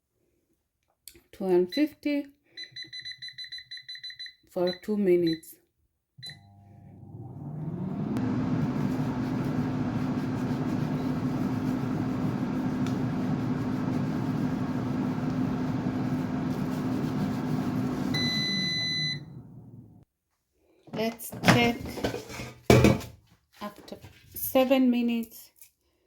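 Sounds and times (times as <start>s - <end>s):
air fryer beep: 6.2s - 20.0s
air fryer fan humming: 6.3s - 20.0s.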